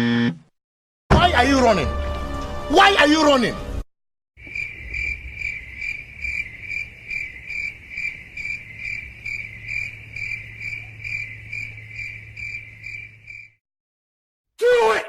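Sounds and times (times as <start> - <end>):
crickets chirping: 4.4 - 13.6.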